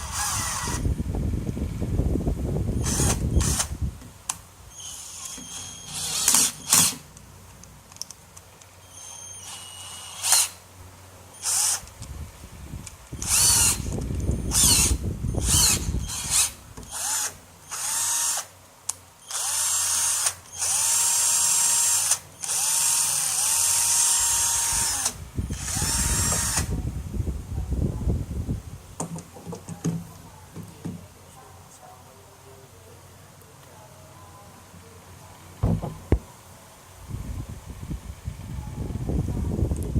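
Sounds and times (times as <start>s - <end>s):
cordless drill motor whine: 0.0s - 1.0s, 2.7s - 3.8s, 4.7s - 7.0s, 8.8s - 10.6s, 11.3s - 11.9s, 13.2s - 18.5s, 19.2s - 26.8s
low rumbling: 0.0s - 4.0s.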